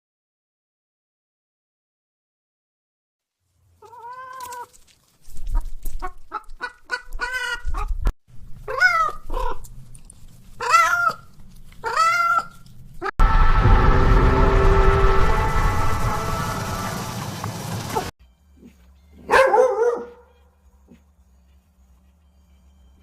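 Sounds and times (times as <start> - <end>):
hen clucking: 5.6 - 8.1
loud rumbling with held tones: 13.2 - 18.1.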